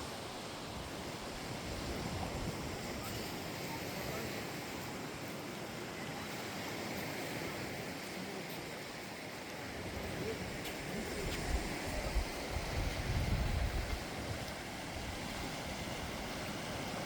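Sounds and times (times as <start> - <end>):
wind gusts on microphone: 0.0 - 5.1, 9.6 - 17.0
sea surf: 0.0 - 17.0
stream running: 0.0 - 17.0.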